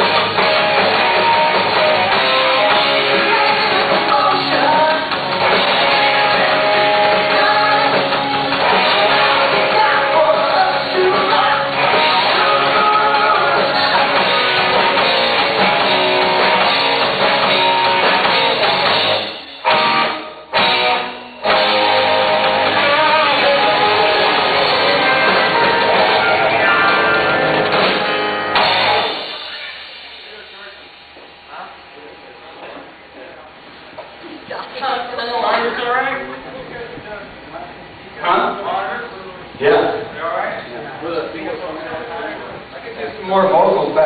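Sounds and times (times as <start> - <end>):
live rock band playing: 0.0 - 30.5
electric guitar: 0.0 - 31.3
person singing: 1.0 - 14.6, 22.6 - 27.4.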